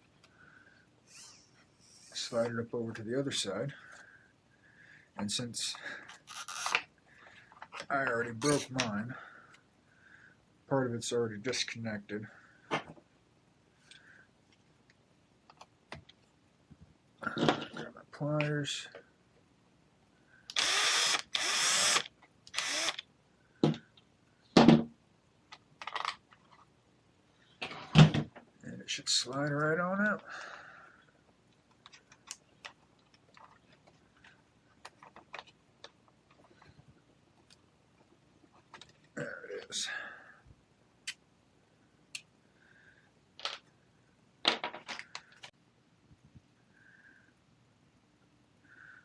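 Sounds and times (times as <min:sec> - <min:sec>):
small tool rasping: 0:20.6 - 0:23.0
plastic parts clicking and clattering: 0:25.5 - 0:26.7, 0:31.7 - 0:36.7, 0:43.4 - 0:43.7, 0:44.4 - 0:45.5.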